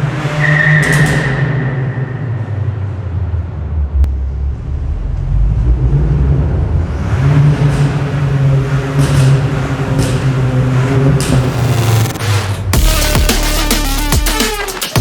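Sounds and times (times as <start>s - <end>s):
car engine and exhaust revving: 0.0s - 15.0s
exhaust crackles: 2.9s - 15.0s.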